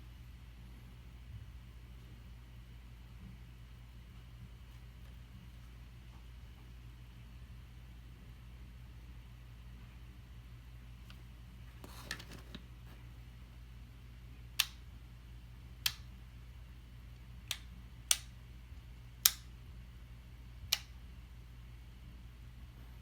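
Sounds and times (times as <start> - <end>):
faint low hum: 0.0 - 23.0
handling rustle: 11.7 - 13.0.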